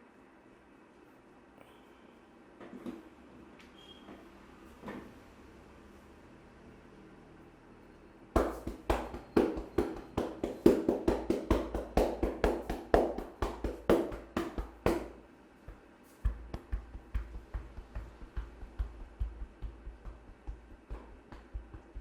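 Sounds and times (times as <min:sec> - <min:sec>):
hands slapping in massage: 0:08.4 - 0:22.0.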